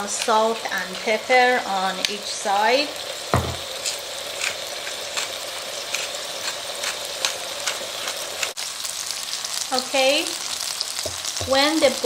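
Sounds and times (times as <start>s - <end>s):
meat sizzling in oil: 0.0s - 12.0s
low thud: 3.4s - 3.7s.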